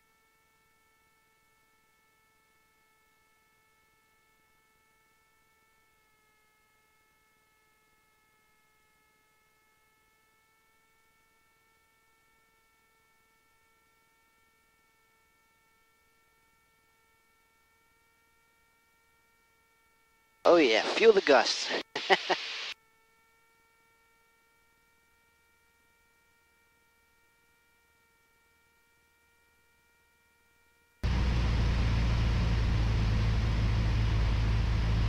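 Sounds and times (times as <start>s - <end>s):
faint steady hum: 0.0s - 27.4s.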